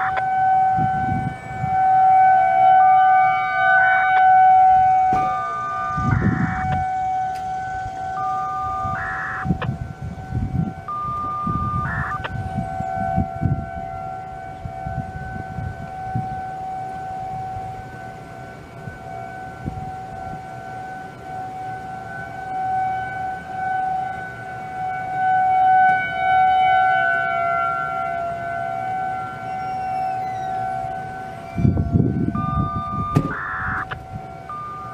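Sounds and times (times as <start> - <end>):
outdoor warning sirens: 0.0 - 34.9.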